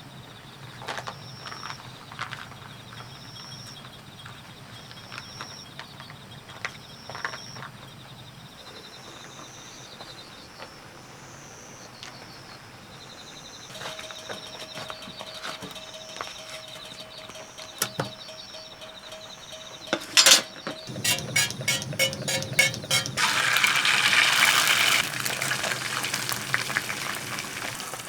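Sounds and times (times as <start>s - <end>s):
night insects chirping: 2.6s - 28.0s.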